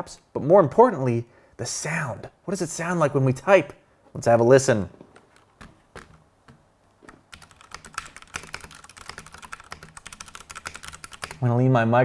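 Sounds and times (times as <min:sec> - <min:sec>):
mechanical keyboard typing: 0:05.1 - 0:06.2, 0:07.1 - 0:11.4.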